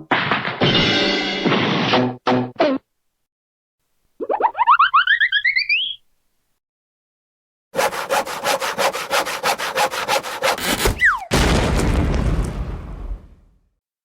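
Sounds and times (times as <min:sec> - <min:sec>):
fast sawing strokes: 0:07.8 - 0:11.2
loud crash: 0:11.3 - 0:13.5.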